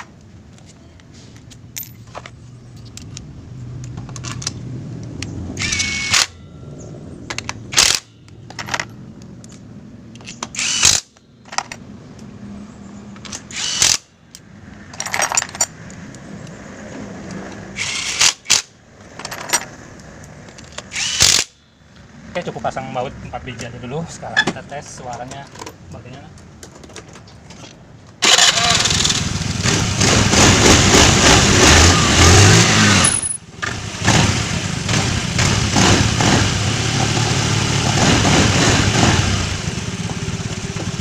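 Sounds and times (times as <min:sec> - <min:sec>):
metal parts clinking: 0:01.4 - 0:03.2, 0:07.3 - 0:09.0, 0:14.9 - 0:15.8, 0:33.0 - 0:33.4
power tool driving bolts: 0:05.6 - 0:06.4, 0:07.3 - 0:08.1, 0:10.2 - 0:11.7, 0:13.3 - 0:14.1, 0:17.8 - 0:19.6, 0:20.7 - 0:21.6, 0:28.2 - 0:36.4.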